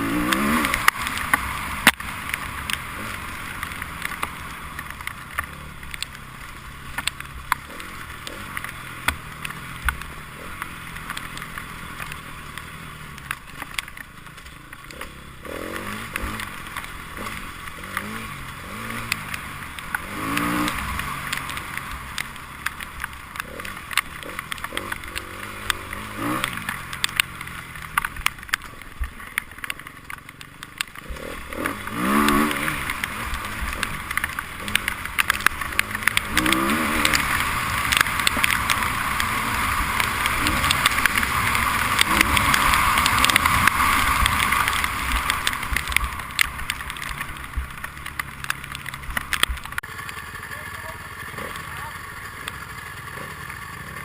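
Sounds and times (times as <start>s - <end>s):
motorcycle engines revving: 0.0s - 54.0s
sharp ticks and clicks: 0.0s - 54.0s.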